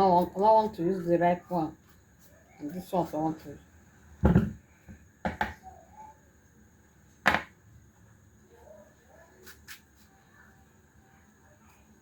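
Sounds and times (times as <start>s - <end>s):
sharp kitchen knocks: 4.2s - 4.6s, 5.2s - 5.6s, 7.2s - 7.5s.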